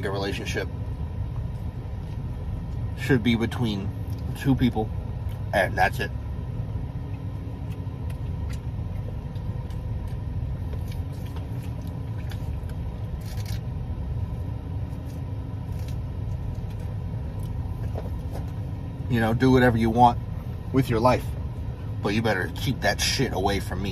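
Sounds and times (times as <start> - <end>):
steady low rumble: 0.0 - 23.9
person chewing food: 7.0 - 18.7.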